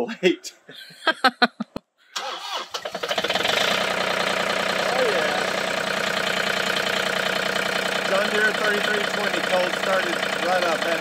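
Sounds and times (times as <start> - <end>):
diesel tractor engine idling: 2.2 - 11.0
starter motor cranking: 2.2 - 11.0.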